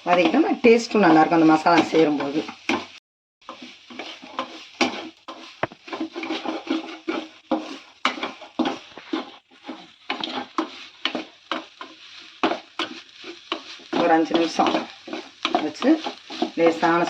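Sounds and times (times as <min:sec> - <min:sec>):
oil sizzling: 0:00.0 - 0:17.0
spoon scraping frying pan: 0:00.0 - 0:17.0.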